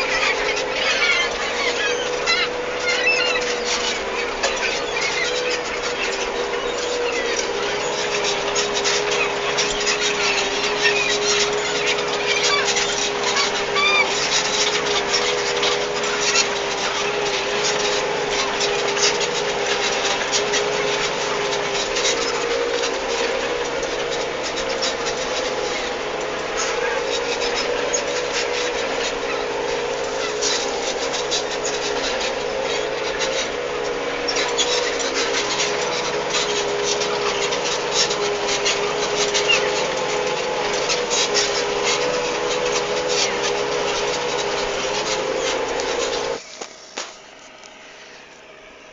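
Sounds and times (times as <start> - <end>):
tractor engine droning: 0.0 - 48.9.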